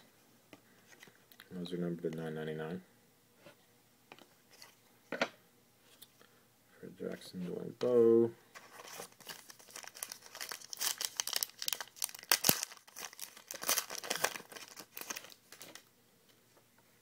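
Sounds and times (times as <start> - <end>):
wrapper being torn and crinkled: 8.8 - 15.9.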